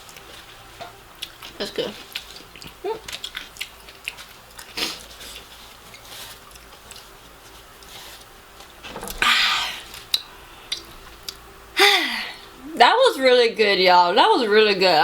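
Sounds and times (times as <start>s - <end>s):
chewing with wet mouth clicks: 0.0s - 7.1s, 9.9s - 11.4s.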